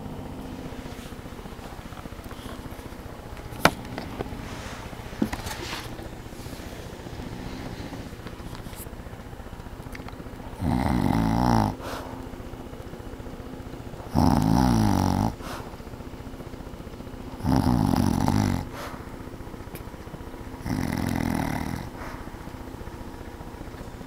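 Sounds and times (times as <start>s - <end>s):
woman snoring: 0.0s - 8.4s, 10.5s - 12.2s, 14.0s - 15.9s, 17.3s - 19.0s, 20.6s - 22.3s
faint steady hum: 0.0s - 24.0s.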